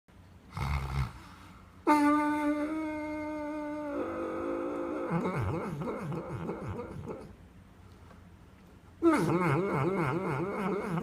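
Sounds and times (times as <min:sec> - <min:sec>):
dog snoring: 0:00.5 - 0:01.3
dog whining howl: 0:01.9 - 0:07.2, 0:09.0 - 0:11.0.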